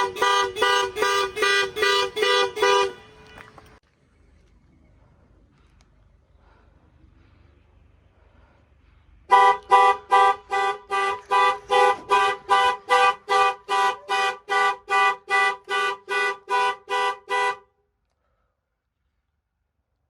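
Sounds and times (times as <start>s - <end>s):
car horn honking: 0.0s - 3.6s, 9.3s - 17.8s.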